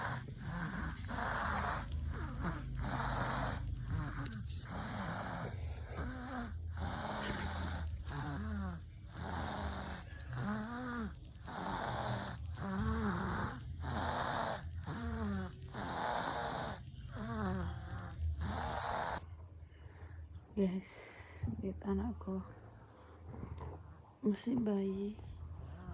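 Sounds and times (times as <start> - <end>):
baby snoring: 0.0 - 19.2.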